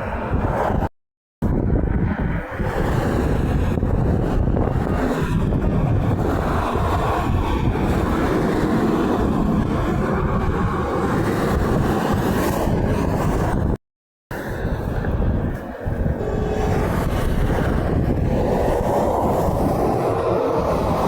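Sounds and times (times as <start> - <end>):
wind on microphone: 0.0 - 21.0
highway traffic passing: 16.2 - 18.6.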